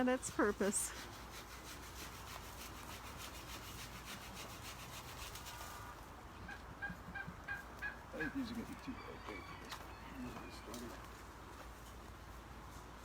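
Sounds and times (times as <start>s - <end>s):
rapid rasping scraping: 0.8s - 5.9s.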